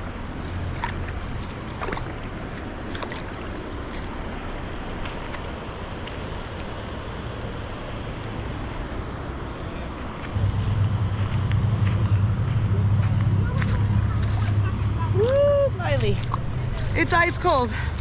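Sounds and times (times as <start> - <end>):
water rushing over rocks: 0.0 - 9.6.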